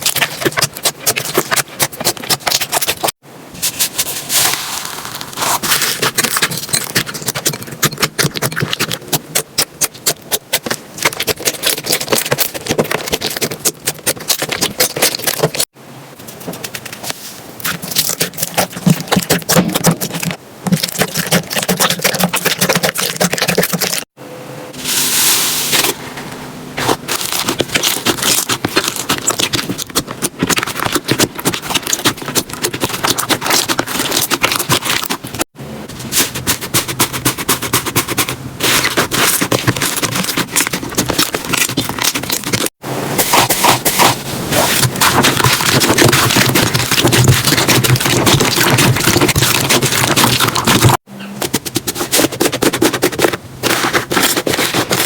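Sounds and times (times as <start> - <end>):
slime crackling and popping: 4.5 - 15.7, 26.8 - 35.4, 38.6 - 42.7, 43.3 - 55.0.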